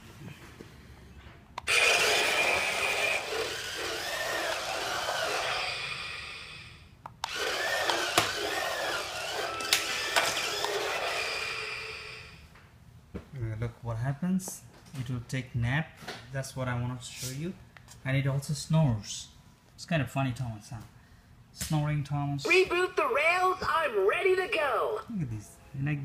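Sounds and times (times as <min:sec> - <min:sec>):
toy train recorded snoring: 0:01.7 - 0:06.8, 0:10.6 - 0:12.4.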